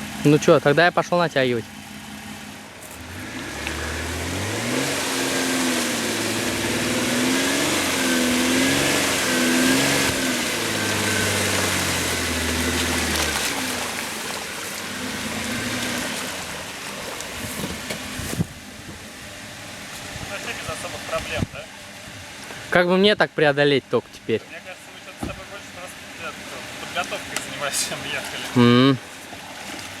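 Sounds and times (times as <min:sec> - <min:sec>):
engine revving under load: 0:01.8 - 0:22.7.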